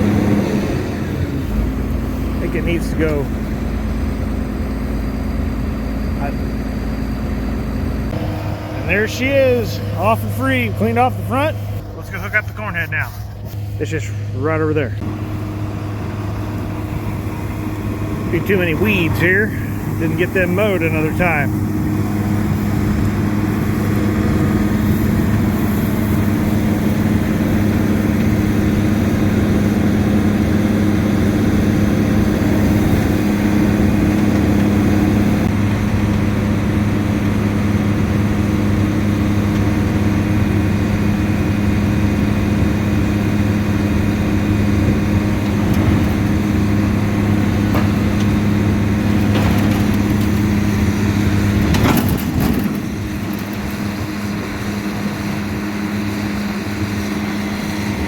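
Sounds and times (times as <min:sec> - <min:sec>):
diesel engine running: 0:00.0 - 0:58.0
rattle of clicks: 0:49.1 - 0:50.5.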